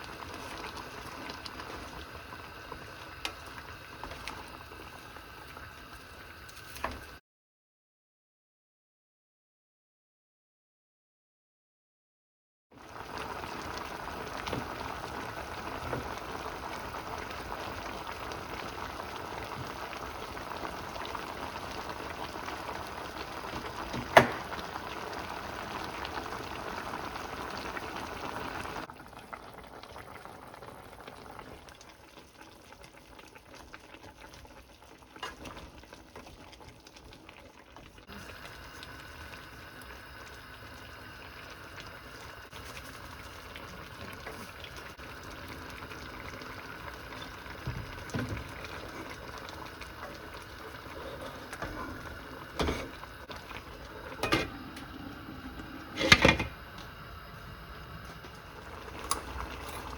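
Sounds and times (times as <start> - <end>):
stew bubbling in a pot: 0.0 - 7.2, 12.8 - 59.9.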